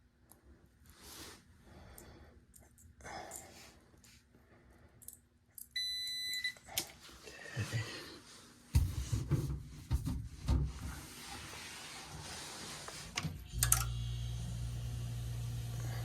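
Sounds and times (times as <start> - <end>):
low electrical hum: 0.0 - 16.0
relay clicks: 13.2 - 14.0.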